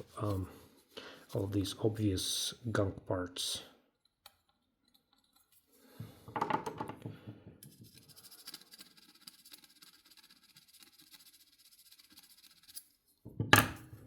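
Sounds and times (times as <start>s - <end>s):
scrubbing metal kettle part: 7.6s - 13.0s.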